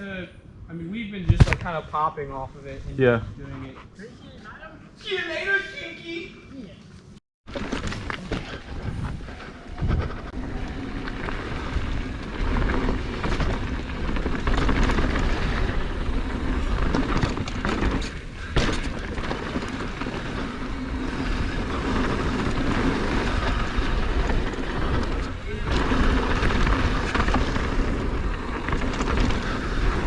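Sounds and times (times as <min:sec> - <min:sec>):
bike tyre roar: 0:01.3 - 0:01.7, 0:07.5 - 0:30.0
sharp knock: 0:01.3 - 0:01.7
bike frame and chain rattling: 0:07.5 - 0:30.0
wind on microphone: 0:08.5 - 0:12.9.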